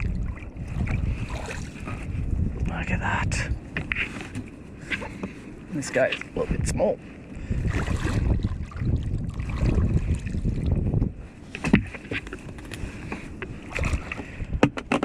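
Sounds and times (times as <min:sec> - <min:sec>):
water rushing and splashing: 0:00.0 - 0:02.1, 0:07.5 - 0:10.7, 0:13.0 - 0:14.4.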